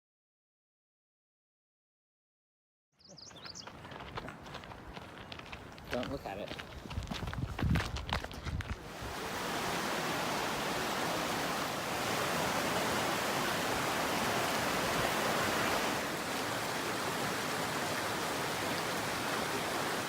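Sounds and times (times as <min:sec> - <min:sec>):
rushing mountain stream: 0:08.7 - 0:20.0.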